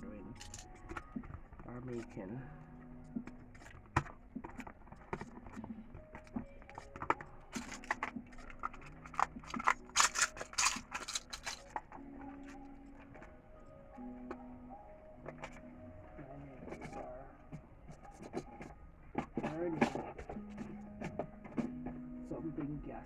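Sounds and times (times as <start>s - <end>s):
small items clicking and knocking: 0.3s - 2.2s, 3.2s - 13.3s.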